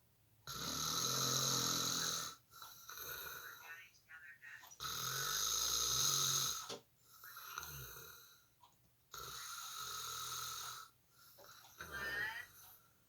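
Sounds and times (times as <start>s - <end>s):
man snoring: 0.5s - 3.4s, 4.8s - 8.4s, 9.1s - 12.7s.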